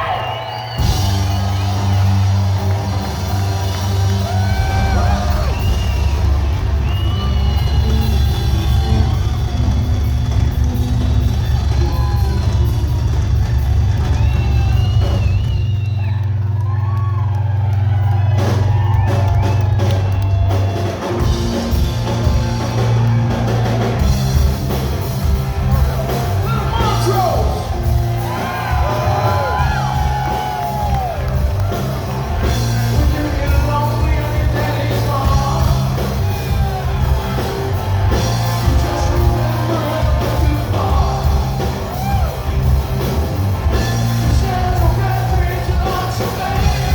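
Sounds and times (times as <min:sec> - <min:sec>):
rock band playing loud: 0:00.0 - 0:46.9
lead vocal singing: 0:32.9 - 0:36.2, 0:38.8 - 0:42.0, 0:44.2 - 0:46.9.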